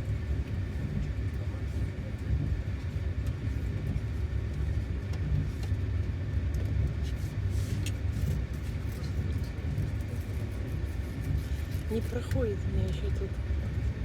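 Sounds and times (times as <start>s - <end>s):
train rumble inside carriage: 0.0s - 14.0s.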